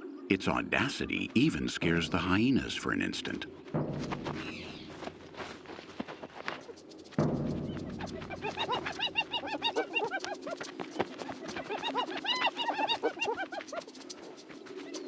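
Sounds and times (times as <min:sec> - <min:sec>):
hyenas giggling: 0:08.0 - 0:13.9.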